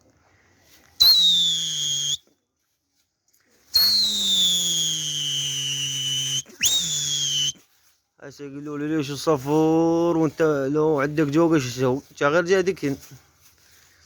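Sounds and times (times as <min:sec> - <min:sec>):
long shrill whistles: 0:01.0 - 0:02.2, 0:03.7 - 0:07.6.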